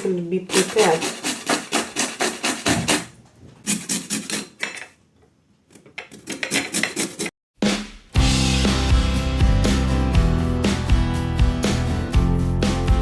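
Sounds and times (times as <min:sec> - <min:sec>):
lemon rind grated on a grater: 0:00.0 - 0:03.0, 0:06.3 - 0:07.3.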